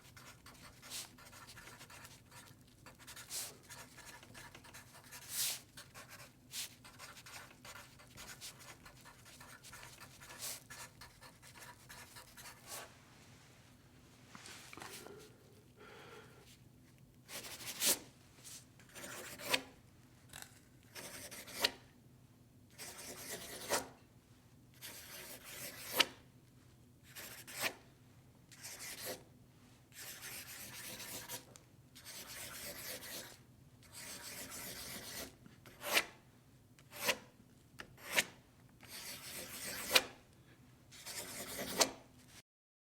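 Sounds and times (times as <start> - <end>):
pen writing on paper: 0.1 - 12.9, 18.9 - 19.6, 20.9 - 21.7, 22.8 - 23.8, 27.1 - 27.7, 30.0 - 36.0, 38.9 - 40.0, 41.0 - 41.9.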